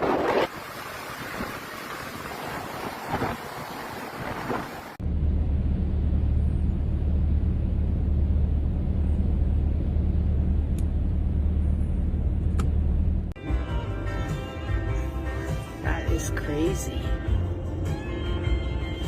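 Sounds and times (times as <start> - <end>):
surf: 0.0 - 5.0
wind: 0.0 - 13.4
loud steady low rumble: 5.0 - 14.0.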